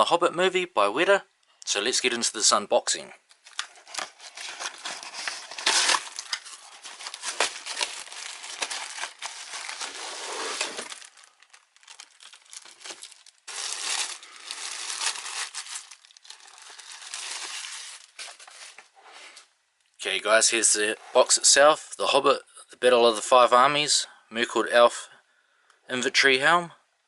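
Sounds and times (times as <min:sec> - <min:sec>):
wrapping crinkling and tearing: 0:03.3 - 0:18.9.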